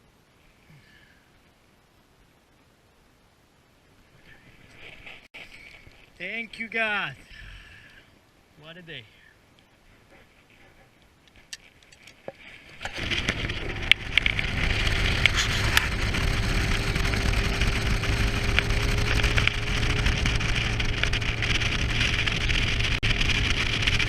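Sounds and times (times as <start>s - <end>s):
boat motor hum: 13.0s - 24.0s.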